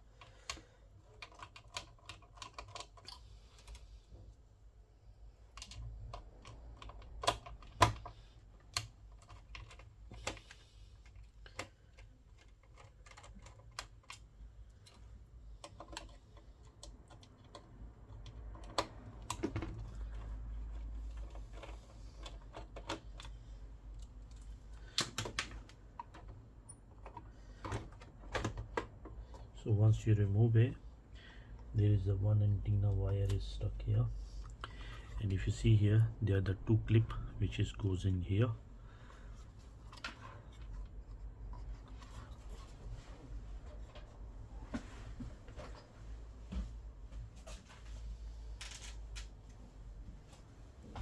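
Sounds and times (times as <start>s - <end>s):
metal and plastic parts handled: 0.2s - 4.0s, 5.5s - 29.5s, 39.3s - 42.8s, 48.5s - 49.4s.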